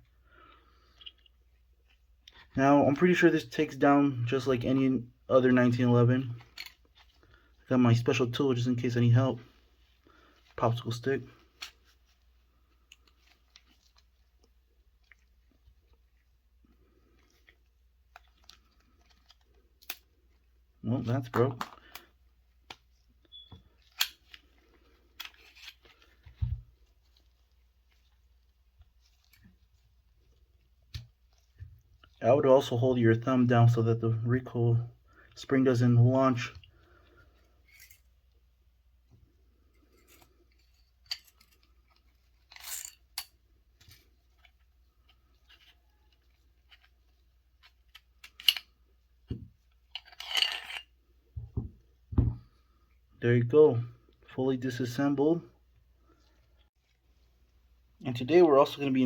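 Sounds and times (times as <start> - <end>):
metallic clicks of pistol parts: 6.4 - 7.0, 23.9 - 24.4, 47.6 - 48.8.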